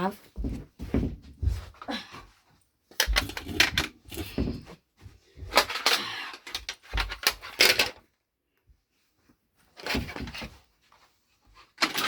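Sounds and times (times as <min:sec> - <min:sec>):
plastic toy pieces clattering: 0:03.0 - 0:04.0, 0:05.6 - 0:08.0.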